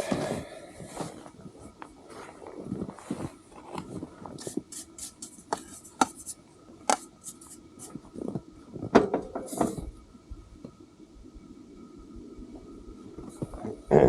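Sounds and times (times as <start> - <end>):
scraping and rubbing: 2.1 - 8.4.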